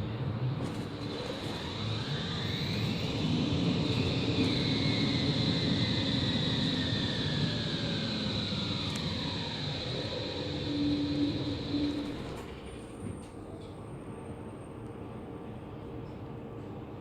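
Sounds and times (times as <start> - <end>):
low rumbling running noise: 0.0 - 13.2
tram traction drive whine: 0.0 - 16.0.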